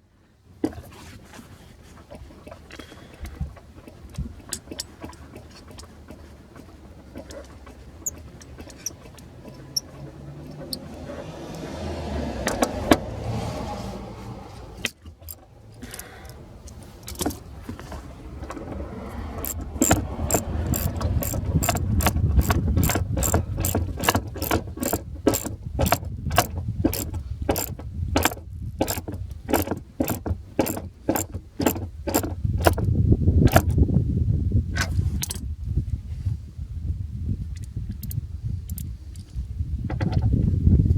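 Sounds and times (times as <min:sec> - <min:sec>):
ratchet wrench clicking: 0:19.4 - 0:32.9, 0:33.5 - 0:33.8.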